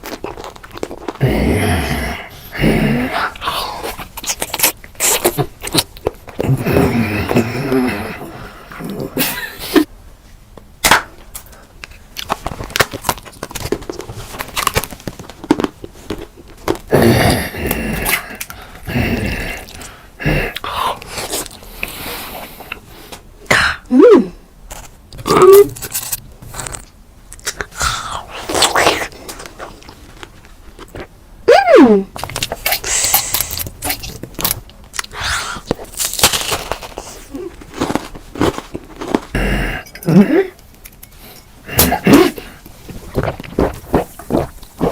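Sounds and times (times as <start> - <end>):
food crunching being chewed: 0.0 - 1.2, 3.3 - 6.5, 11.4 - 17.0, 24.7 - 31.1, 32.2 - 44.9.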